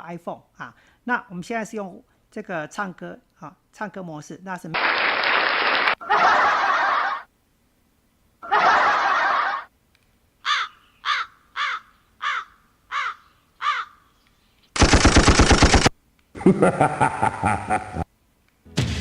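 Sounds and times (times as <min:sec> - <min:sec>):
applause sound effect: 0:04.8 - 0:06.0
crow cawing: 0:10.4 - 0:14.1.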